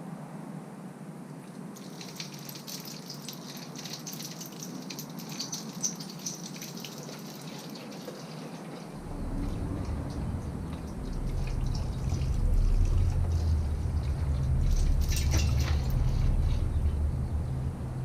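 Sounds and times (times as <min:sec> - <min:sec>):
fluid trickling and spattering: 0:01.5 - 0:17.1
low rumble: 0:09.0 - 0:18.0.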